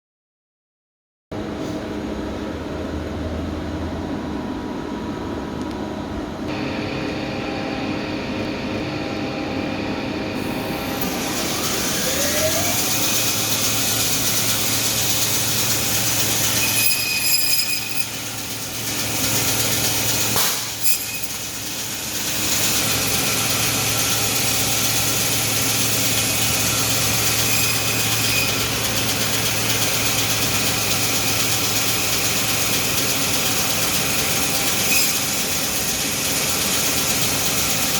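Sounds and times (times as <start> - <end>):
bandsaw whining: 10.4 - 37.9
bandsaw cutting poultry: 11.0 - 30.9.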